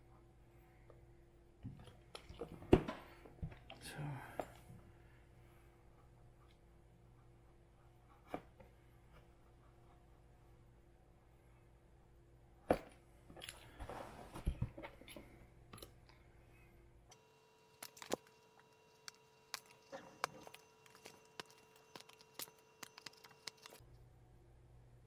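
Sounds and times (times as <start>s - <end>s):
razor blade cutting plastic: 17.7s - 23.8s.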